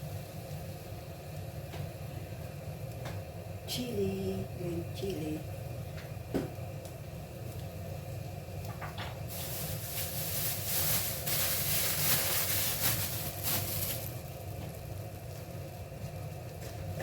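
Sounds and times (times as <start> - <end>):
steady low hum: 0.0 - 17.0
beans sizzling in a pan: 6.8 - 16.8.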